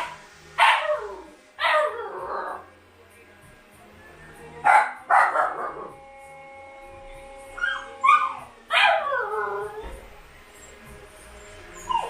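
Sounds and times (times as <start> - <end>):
puppies barking: 0.0 - 2.4, 4.7 - 5.9, 7.6 - 9.8, 11.5 - 12.0
puppy whining: 7.6 - 10.0, 11.4 - 12.0
puppies yelping: 11.4 - 12.0.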